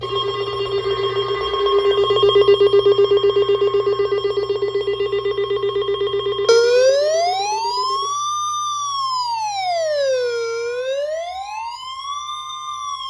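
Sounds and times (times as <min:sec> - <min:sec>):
pulsing electronic alert tone: 0:06.5 - 0:08.3, 0:08.9 - 0:11.9
siren wail rising in pitch: 0:06.5 - 0:13.0.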